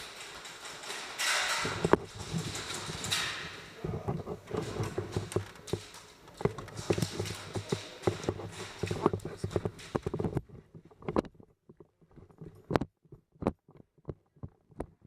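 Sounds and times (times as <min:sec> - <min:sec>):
gear clattering: 0:00.0 - 0:12.8
footsteps on hard floor: 0:01.8 - 0:10.5.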